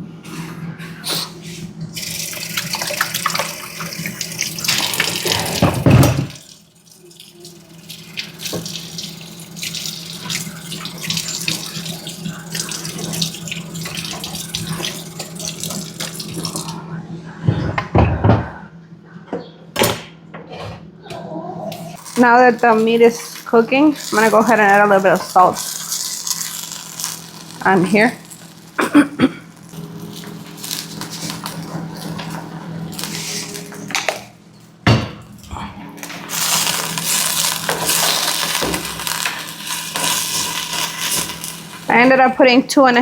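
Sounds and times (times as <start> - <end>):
meat sizzling in hot oil: 2.0 - 16.8, 22.0 - 34.0, 36.0 - 42.2.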